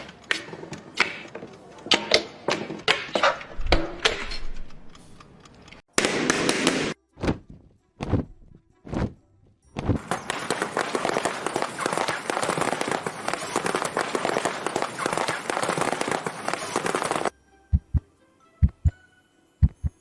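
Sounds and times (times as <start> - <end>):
heartbeat thumps: 17.7 - 19.0, 19.6 - 20.0.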